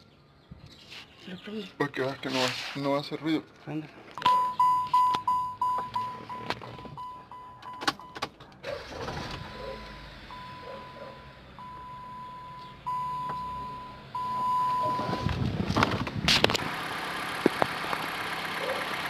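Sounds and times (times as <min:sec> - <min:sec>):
dashboard warning chime beeps: 0:04.2 - 0:08.2, 0:09.4 - 0:15.3
car engine idling: 0:16.1 - 0:19.0.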